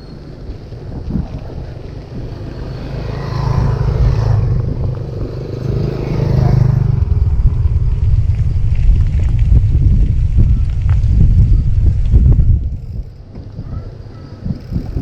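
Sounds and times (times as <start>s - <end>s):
wind rumbling on microphone: 0.0s - 15.0s
motor vehicle passing: 0.4s - 10.8s.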